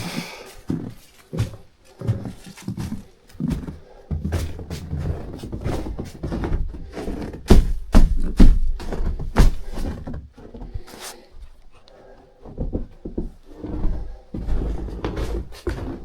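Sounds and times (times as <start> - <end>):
rustling: 0.1 - 16.0
thuds and knocks of gear: 5.3 - 10.8.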